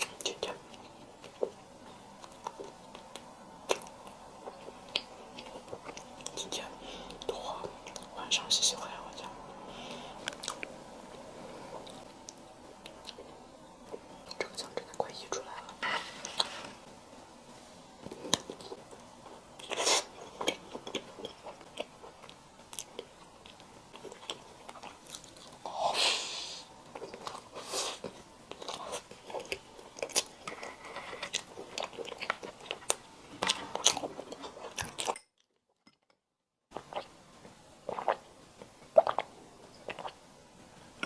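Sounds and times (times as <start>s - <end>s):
crunchy chewing: 26.9s - 35.2s.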